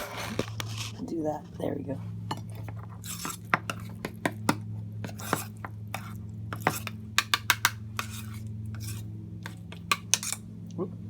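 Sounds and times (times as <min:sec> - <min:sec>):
steady low hum: 0:00.0 - 0:11.0
metal utensil scraping a dish: 0:02.3 - 0:04.0, 0:05.0 - 0:10.4.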